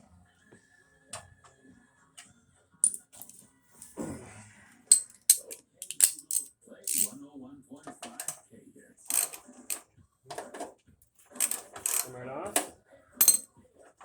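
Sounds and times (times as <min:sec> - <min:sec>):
metal driver bits clinking: 0:02.8 - 0:03.4, 0:04.9 - 0:07.1, 0:08.2 - 0:08.4, 0:09.1 - 0:09.5, 0:11.4 - 0:12.2, 0:13.2 - 0:13.4
sharp metallic clicks: 0:04.9 - 0:07.1.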